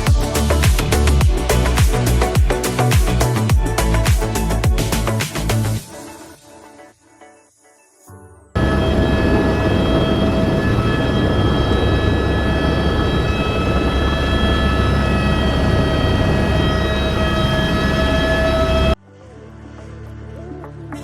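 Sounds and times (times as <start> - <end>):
helicopter engine and rotor: 8.6 - 19.0
high turbine whine: 8.6 - 19.0.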